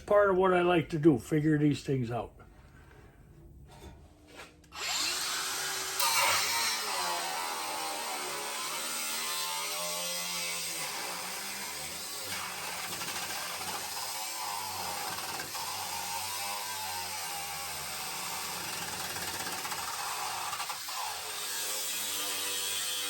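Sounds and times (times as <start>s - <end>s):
power tool grinding on steel: 4.8s - 23.0s.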